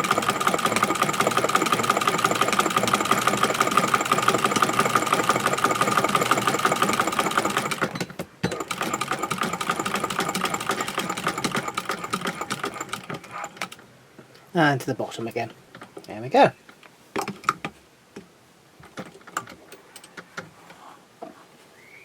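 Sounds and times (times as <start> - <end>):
sewing machine running fast: 0.0 - 13.8.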